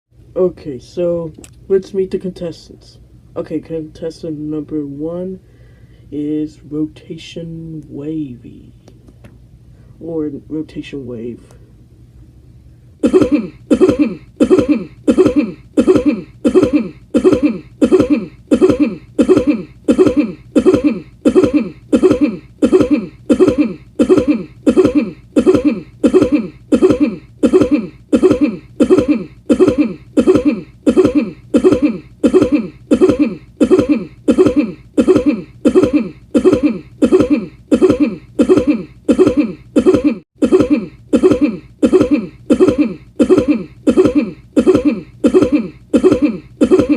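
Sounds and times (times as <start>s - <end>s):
man coughing: 13.0s - 46.9s.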